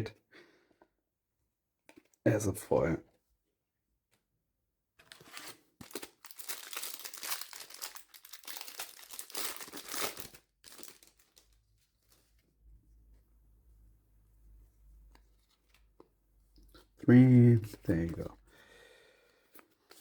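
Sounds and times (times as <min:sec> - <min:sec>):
foil wrapper crinkling and tearing: 0:05.1 - 0:12.3.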